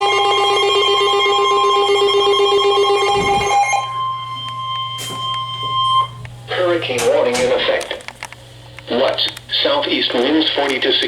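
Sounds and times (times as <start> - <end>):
steady high alarm tone: 0.0 - 7.8.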